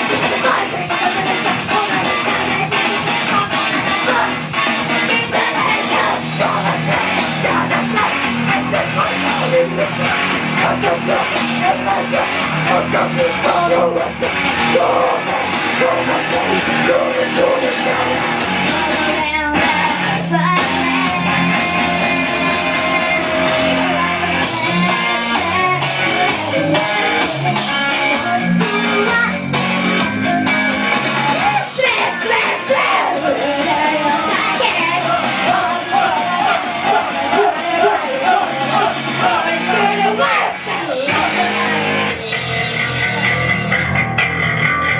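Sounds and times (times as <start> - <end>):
loud rock music with singing: 0.0 - 44.9.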